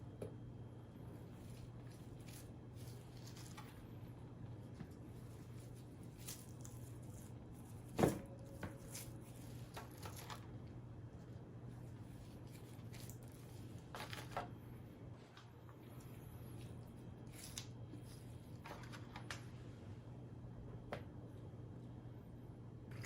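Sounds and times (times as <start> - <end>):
low steady hum: 0.0 - 23.0
eating and food-handling noises: 1.0 - 19.7.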